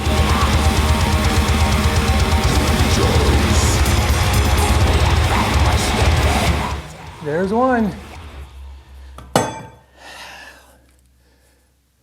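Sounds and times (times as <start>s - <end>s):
heavy metal music: 0.0s - 9.6s.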